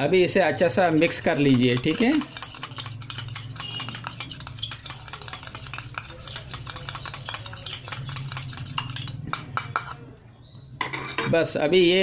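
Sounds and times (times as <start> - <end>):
spoon clinking against glass: 0.8 - 10.0.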